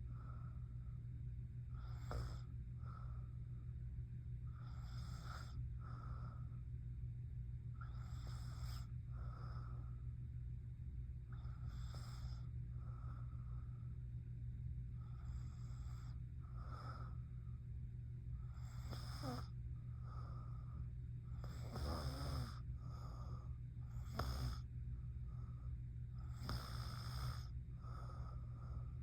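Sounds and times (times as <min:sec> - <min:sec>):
soft breaths: 0:00.0 - 0:29.0
steady low hum: 0:00.0 - 0:29.0
woman snoring: 0:01.7 - 0:02.5, 0:04.6 - 0:06.3, 0:18.5 - 0:19.6, 0:21.3 - 0:23.2, 0:23.9 - 0:24.6, 0:26.2 - 0:28.3.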